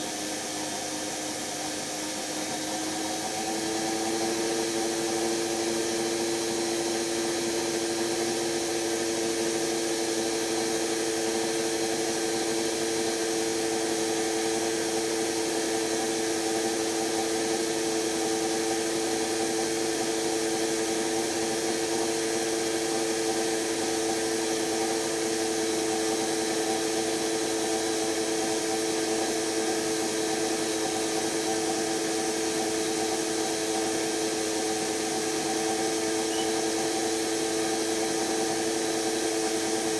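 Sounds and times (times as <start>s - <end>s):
washing machine motor whining: 25.2s - 39.9s.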